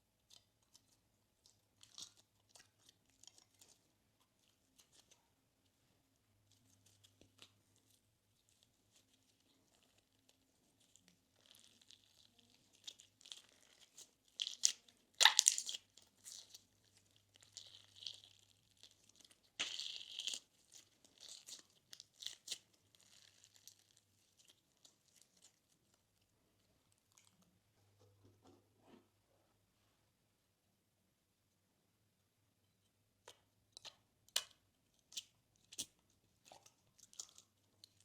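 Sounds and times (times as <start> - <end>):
slime squished and stretched: 0.2 - 5.2, 6.5 - 26.0.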